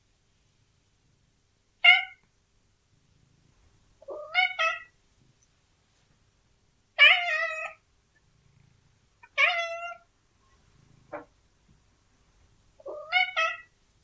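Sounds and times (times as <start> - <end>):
cat meowing: 1.8 - 2.2, 4.0 - 4.9, 7.0 - 7.8, 9.2 - 10.1, 12.8 - 13.7.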